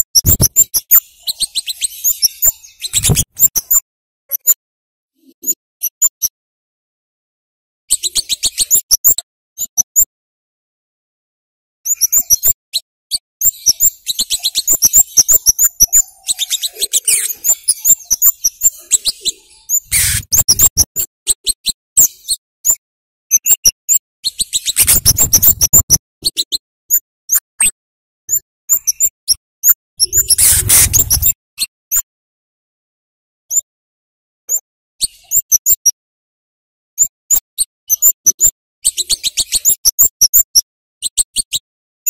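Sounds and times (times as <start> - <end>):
bird giving sharp high calls: 14.6 - 20.8, 30.0 - 31.3
rustling: 24.8 - 26.0, 30.2 - 31.4.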